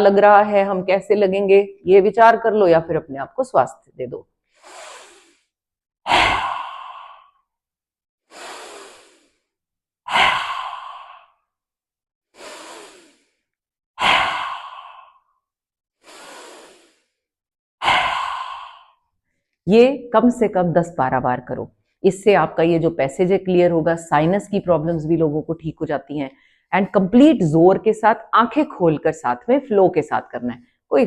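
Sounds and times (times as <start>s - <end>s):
quiet inhalations: 4.4s - 7.4s, 8.2s - 11.5s, 12.3s - 15.3s, 16.0s - 19.5s, 26.3s - 26.7s
woman rasping exhalations: 4.6s - 5.5s, 6.1s - 7.4s, 8.3s - 9.5s, 10.1s - 11.4s, 12.4s - 13.4s, 14.0s - 15.3s, 16.0s - 17.1s, 17.8s - 19.0s.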